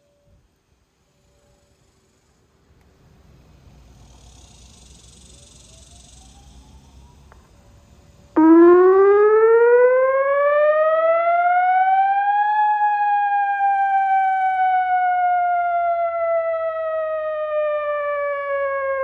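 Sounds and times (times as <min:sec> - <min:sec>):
outdoor warning siren wailing: 0:05.2 - 0:07.6, 0:08.3 - 0:19.0.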